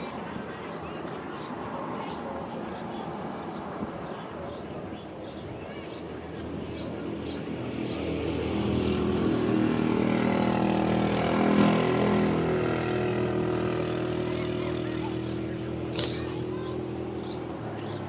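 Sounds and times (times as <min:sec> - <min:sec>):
engine droning: 0:06.0 - 0:18.0.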